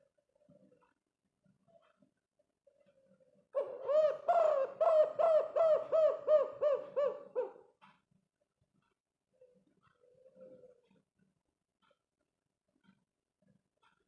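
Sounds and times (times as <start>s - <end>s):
dove cooing: 3.6s - 7.6s.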